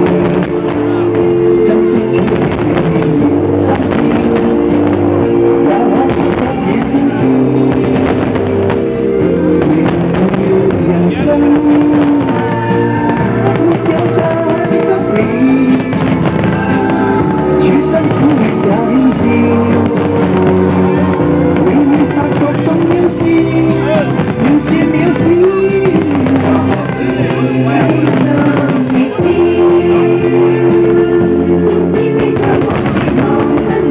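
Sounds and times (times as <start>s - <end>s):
firework bangs and crackles: 0.0s - 33.9s.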